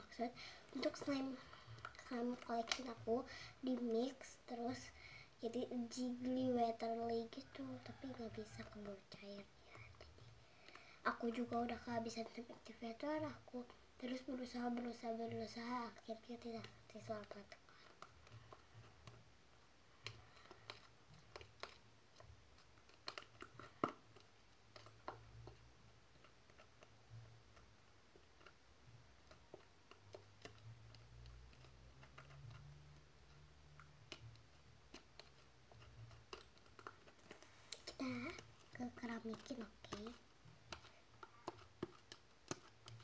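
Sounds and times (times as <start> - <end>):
slime kneaded by hand: 11.0 - 43.0.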